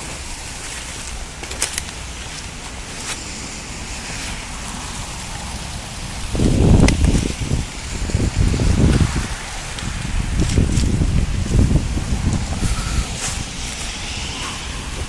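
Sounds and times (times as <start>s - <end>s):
rain falling: 0.0s - 15.0s
raindrops ticking on surfaces: 0.0s - 15.0s.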